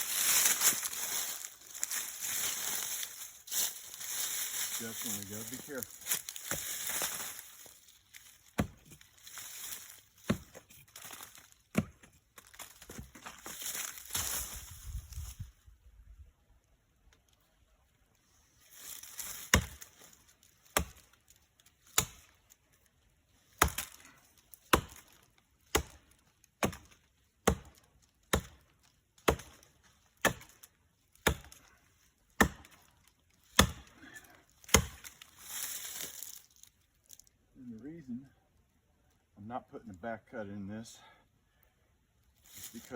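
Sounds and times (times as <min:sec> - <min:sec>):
axe chopping wood: 0:06.1 - 0:07.2, 0:08.6 - 0:09.0, 0:10.2 - 0:10.7, 0:11.7 - 0:12.2, 0:19.4 - 0:19.9, 0:20.7 - 0:21.1, 0:21.9 - 0:22.3, 0:23.6 - 0:24.0, 0:24.7 - 0:30.6, 0:31.2 - 0:31.6, 0:32.4 - 0:32.8, 0:33.5 - 0:34.0, 0:34.6 - 0:35.2.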